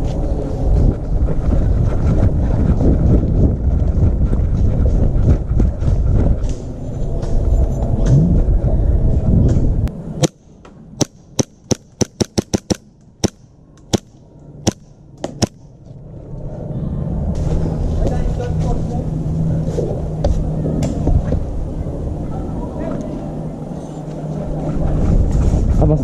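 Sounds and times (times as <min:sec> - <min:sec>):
wind rumble on microphone: 0:00.0 - 0:10.2, 0:15.4 - 0:26.0
airsoft gun shots: 0:10.2 - 0:15.6.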